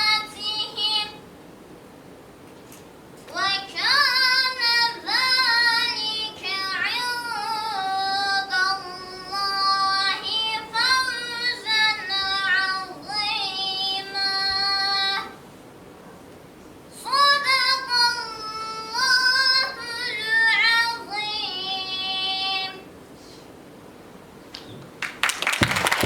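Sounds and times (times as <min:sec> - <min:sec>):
girl singing: 0:00.0 - 0:01.2, 0:03.3 - 0:15.4, 0:16.9 - 0:22.9.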